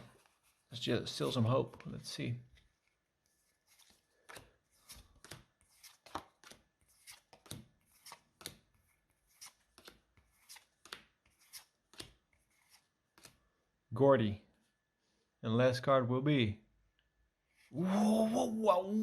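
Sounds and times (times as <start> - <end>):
trading cards flicking and slapping: 2.6 - 13.4.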